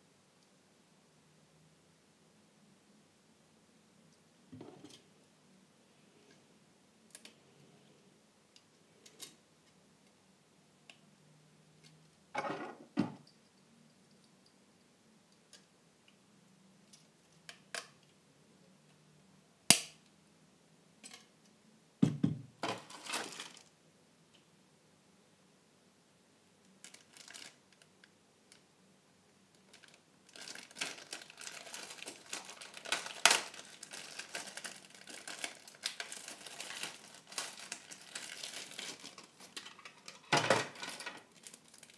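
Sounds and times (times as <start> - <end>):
packaging rustling: 22.8 - 23.7, 26.8 - 27.6, 29.7 - 41.9.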